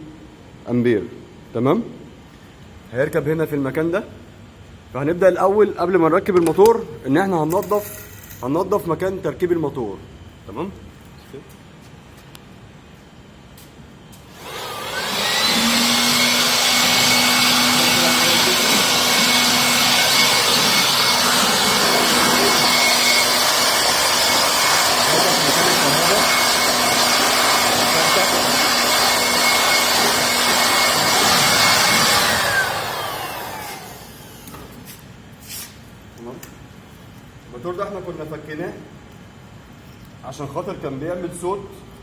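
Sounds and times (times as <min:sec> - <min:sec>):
electric air blower whining: 0:14.3 - 0:35.0.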